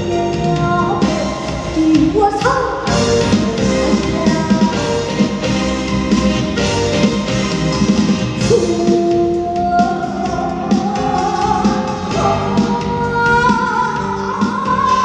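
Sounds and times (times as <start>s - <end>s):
woman singing: 0.0s - 5.3s, 8.4s - 15.0s
instrumental accompaniment with guitar: 2.9s - 15.0s.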